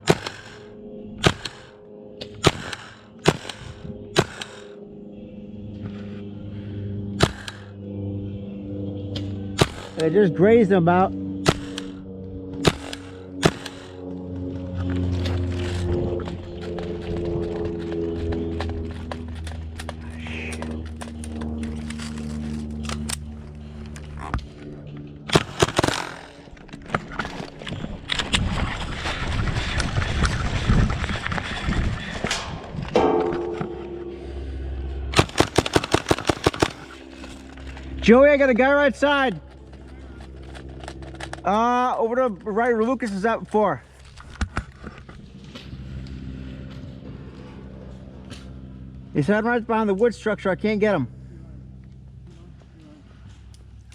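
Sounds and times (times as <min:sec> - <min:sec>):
airsoft rifle shots: 0:00.0 - 0:00.6, 0:01.2 - 0:01.7, 0:02.4 - 0:04.7, 0:07.2 - 0:07.7, 0:09.6 - 0:10.1, 0:11.4 - 0:12.0, 0:12.6 - 0:14.0, 0:25.3 - 0:26.4, 0:35.2 - 0:37.0
steady low hum: 0:00.0 - 0:53.9.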